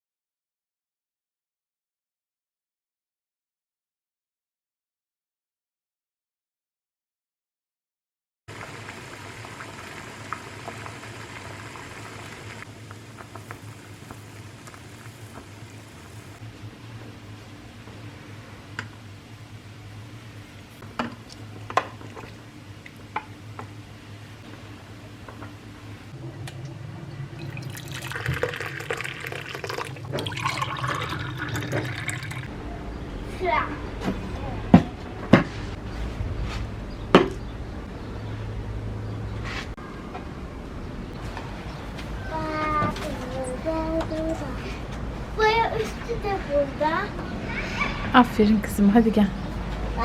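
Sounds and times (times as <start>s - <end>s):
water boiling in pot: 8.5s - 32.5s.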